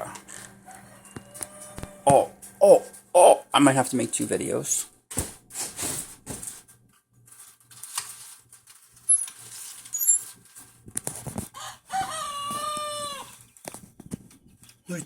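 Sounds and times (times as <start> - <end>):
rustling and scuffing: 5.1 - 6.7.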